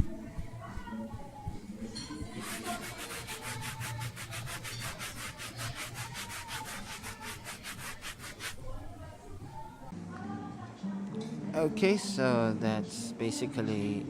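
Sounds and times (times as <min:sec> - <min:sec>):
fingers rubbing on microphone: 0:00.0 - 0:09.9.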